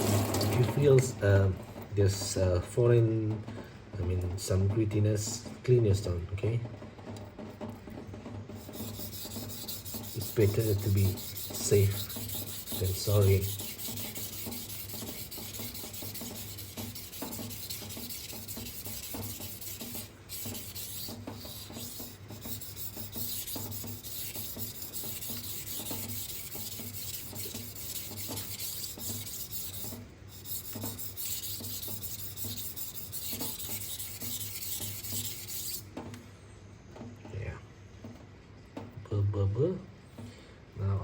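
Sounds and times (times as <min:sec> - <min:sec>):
knife scraping on a whetstone: 0:08.5 - 0:35.9.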